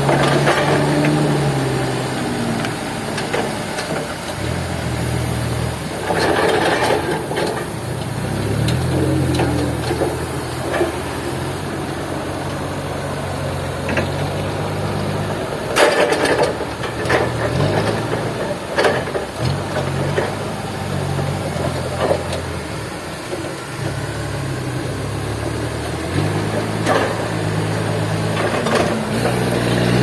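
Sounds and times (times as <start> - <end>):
sawmill engine idling: 0.0 - 30.0
loud knocks and clatters: 15.4 - 20.6.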